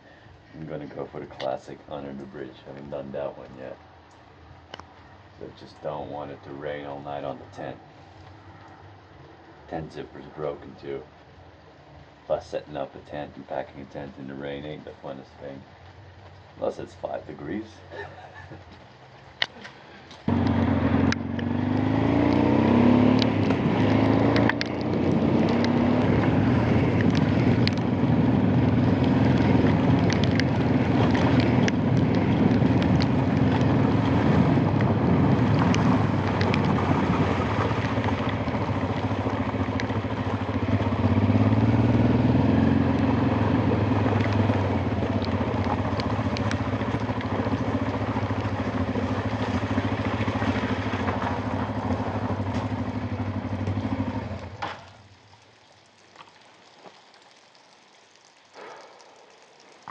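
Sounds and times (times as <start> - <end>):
wind and road noise: 0.0 - 59.9
motorcycle engine running: 20.2 - 55.0.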